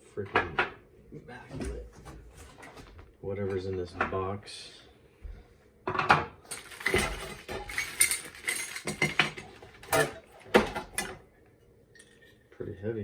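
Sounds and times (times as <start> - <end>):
hard parts clinking and knocking: 5.9 - 11.3
packaging rustling: 6.5 - 10.1.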